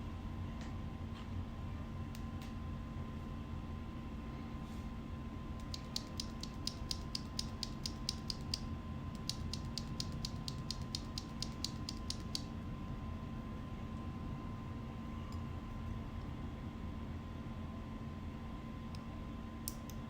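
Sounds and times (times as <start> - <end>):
keyboard switches clicking: 5.6 - 8.6, 9.2 - 12.5.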